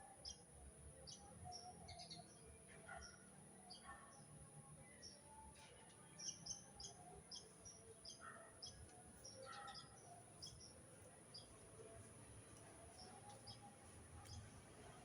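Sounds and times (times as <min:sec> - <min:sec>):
faint bird chirps: 0:04.9 - 0:11.6.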